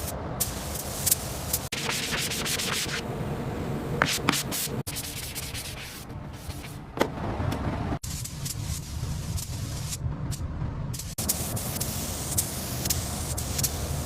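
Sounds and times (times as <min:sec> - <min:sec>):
abrasive sanding on a surface: 0:01.6 - 0:03.0, 0:04.0 - 0:06.8.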